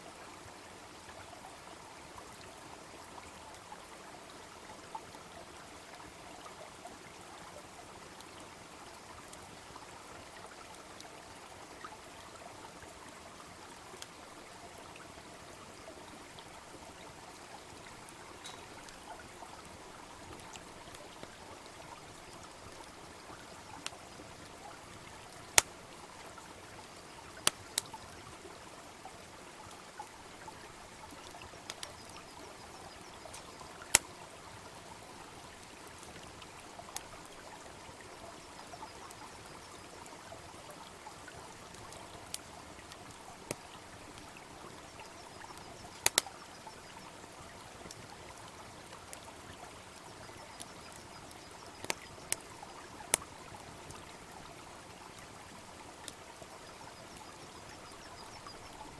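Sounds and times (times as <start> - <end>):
brook babbling: 0.0 - 58.9
bonfire wood popping: 18.3 - 24.1, 25.4 - 25.9, 27.3 - 28.0, 31.1 - 34.1, 41.7 - 46.4, 50.4 - 54.0.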